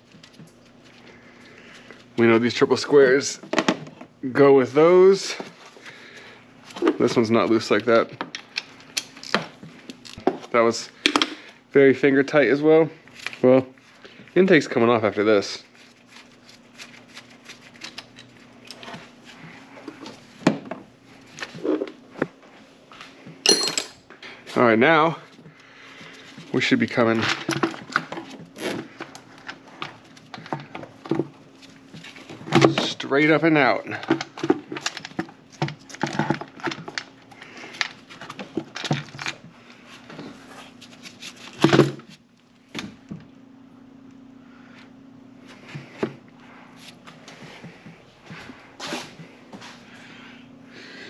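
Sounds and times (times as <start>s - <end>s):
tools and metal parts clinking: 23.4s - 24.0s.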